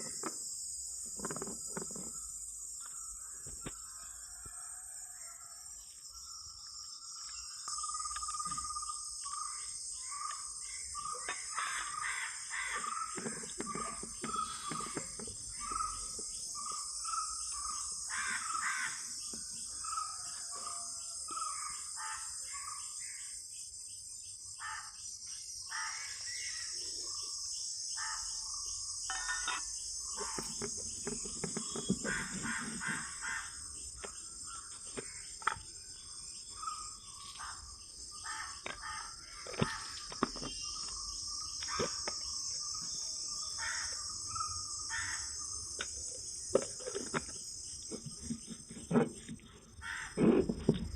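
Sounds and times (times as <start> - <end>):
high-pitched insect chorus: 0.0 - 50.9
birds calling and chirping: 6.1 - 23.4, 25.7 - 50.9.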